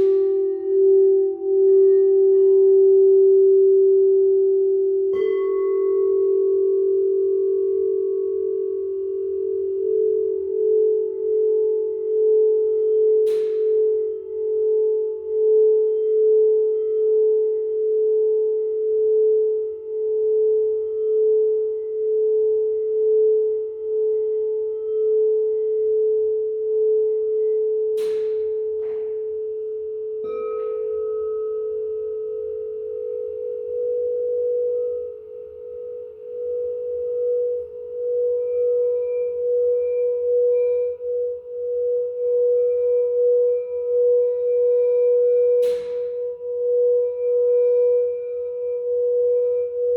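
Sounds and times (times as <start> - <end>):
singing bowl struck: 0.0 - 4.3, 12.8 - 14.8, 27.9 - 42.4, 44.2 - 49.8
singing bowls ringing: 0.0 - 49.9.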